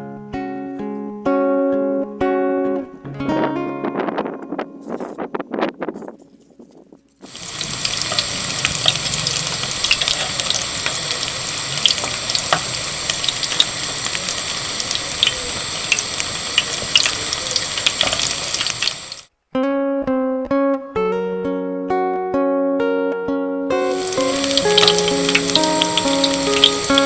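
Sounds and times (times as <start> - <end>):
sizzling hiss with crackles: 7.2 - 19.3, 23.8 - 27.0.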